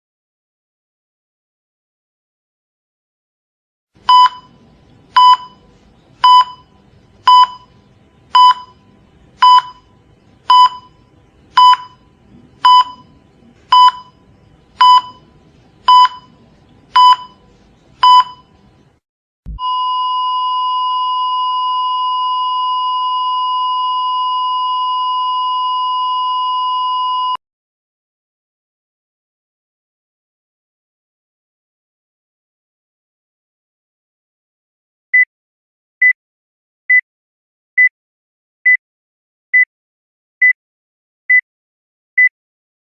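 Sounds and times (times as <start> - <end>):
cardiac monitor beeping: 4.1 - 17.4, 18.0 - 18.6, 19.5 - 27.4.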